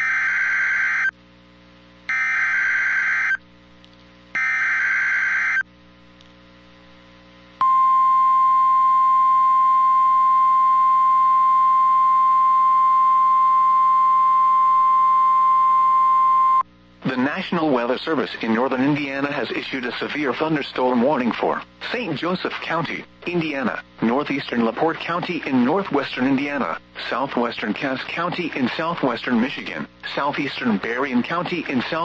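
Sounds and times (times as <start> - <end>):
steady warning alarm tone: 0.0 - 1.1, 2.1 - 3.4, 4.4 - 5.6, 7.6 - 16.6
screechy data tone bursts: 2.1 - 3.4, 4.4 - 5.6.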